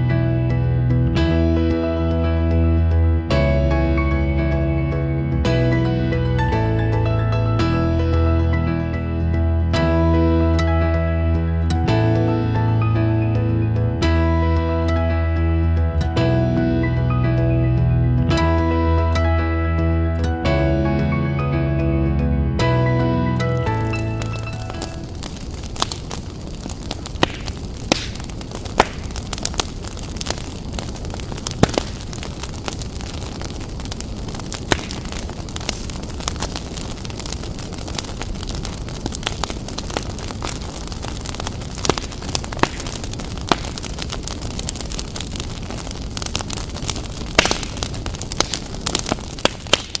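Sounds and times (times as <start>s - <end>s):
bonfire burning: 23.2s - 50.0s
wood popping and snapping: 23.8s - 50.0s.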